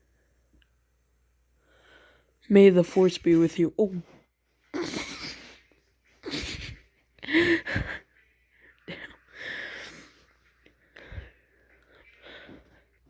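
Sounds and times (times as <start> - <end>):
person stifling laughter: 4.8 - 5.6, 6.2 - 8.1.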